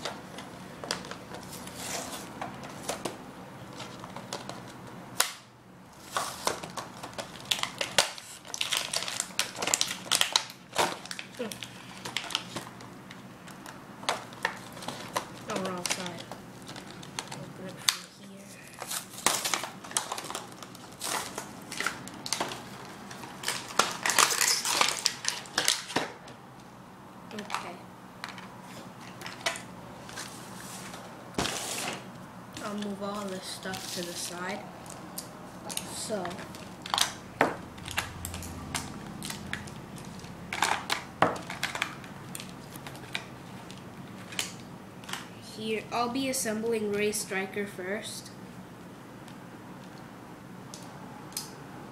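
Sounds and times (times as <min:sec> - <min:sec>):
plastic packaging crinkling: 0:06.0 - 0:26.2, 0:27.3 - 0:45.3
packaging being torn open: 0:06.1 - 0:12.8, 0:18.8 - 0:26.1.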